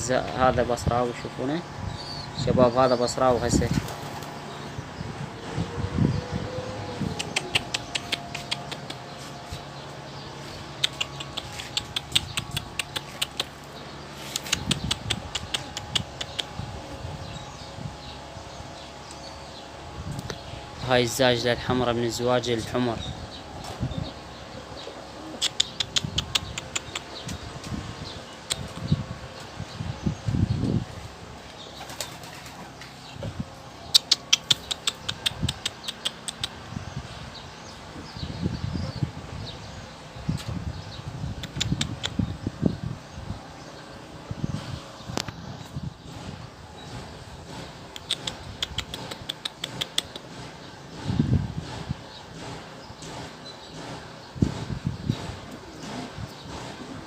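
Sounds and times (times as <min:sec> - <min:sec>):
sharp wing claps: 0:07.1 - 0:09.1, 0:10.7 - 0:16.5, 0:33.9 - 0:36.6, 0:46.9 - 0:51.1
pigeons tapping and clicking: 0:07.1 - 0:16.7, 0:24.6 - 0:29.6, 0:31.4 - 0:33.2, 0:33.8 - 0:36.7, 0:40.3 - 0:42.4, 0:45.1 - 0:57.0
pigeon wings flapping: 0:31.8 - 0:32.7.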